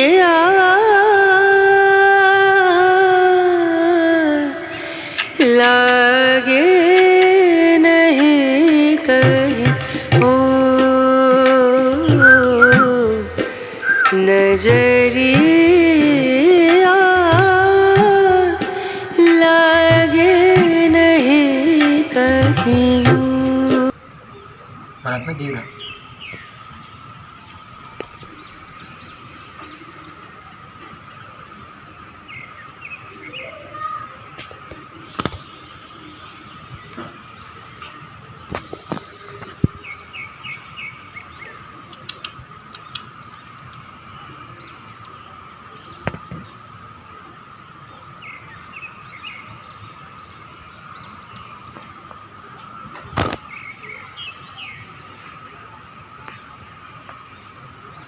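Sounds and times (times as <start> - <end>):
birds chirping: 3.8 - 38.5
sharp clicks or knocks: 5.2 - 6.0, 7.0 - 7.4.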